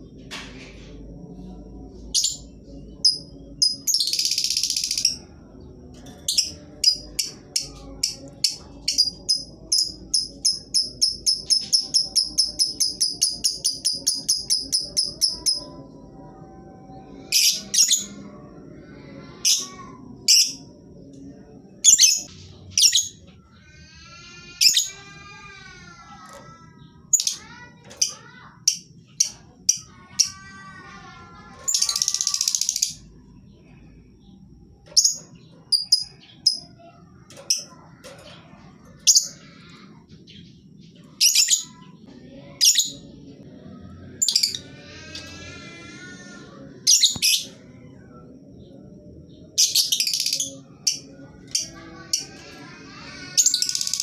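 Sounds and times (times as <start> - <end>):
rapid chattering bird trill: 31.6 - 33.1.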